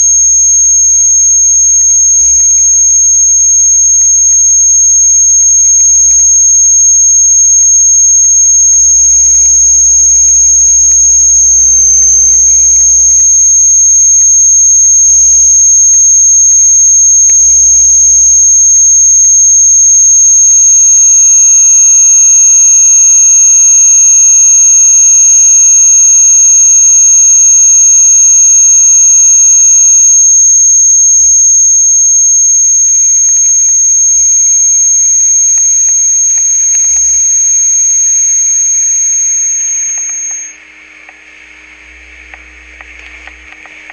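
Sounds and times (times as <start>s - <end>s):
piercing high tone: 0.0s - 41.2s
sustained mid-pitched tones: 35.4s - 40.7s.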